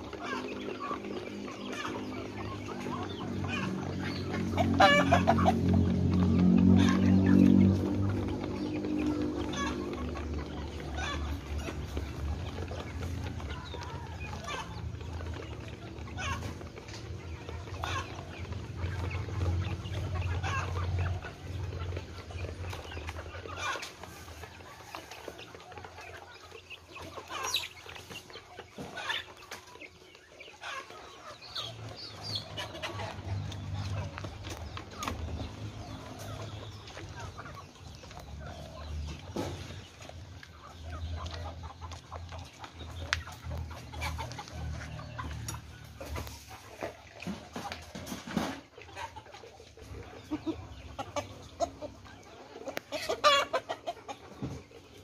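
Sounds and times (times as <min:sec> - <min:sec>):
chickens clucking: 0:00.0 - 0:55.0.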